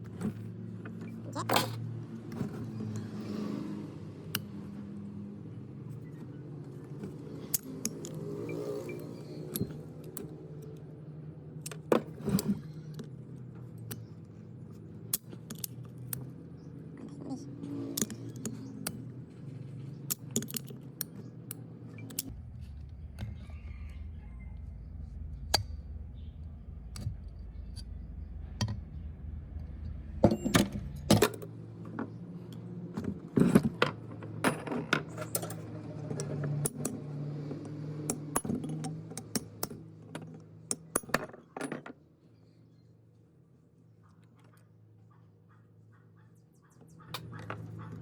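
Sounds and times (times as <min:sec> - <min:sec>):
small metal parts clinking: 0:17.9 - 0:22.3, 0:33.3 - 0:37.2, 0:38.0 - 0:41.9
steady low hum: 0:22.2 - 0:31.8.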